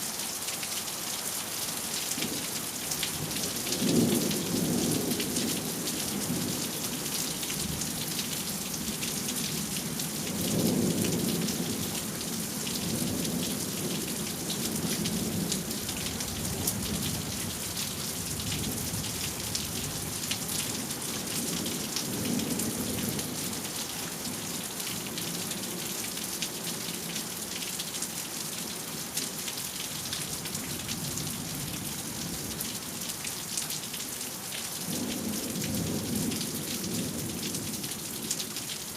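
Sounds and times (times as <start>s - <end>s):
steady rain falling: 0.0s - 38.9s.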